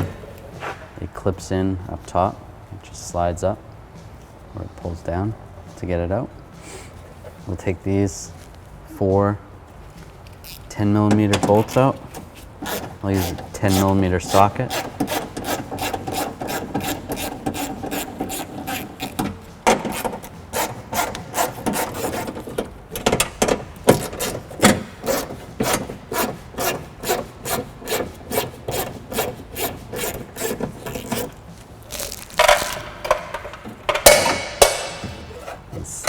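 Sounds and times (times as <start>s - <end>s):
hand ratchet clicking: 10.3s - 35.2s
scrapes: 34.4s - 36.0s.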